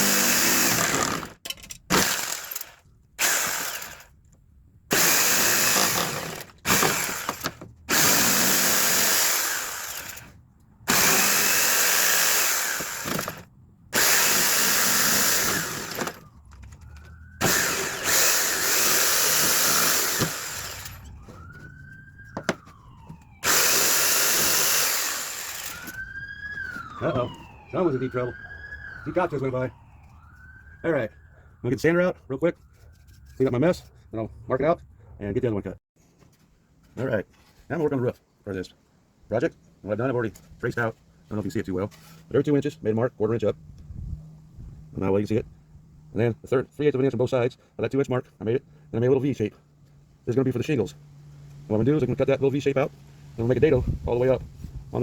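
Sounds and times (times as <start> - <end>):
circular saw cutting wood: 0.0 - 4.1, 4.9 - 13.4, 14.0 - 16.3, 17.4 - 29.7
siren passing: 15.6 - 18.6, 20.1 - 34.4.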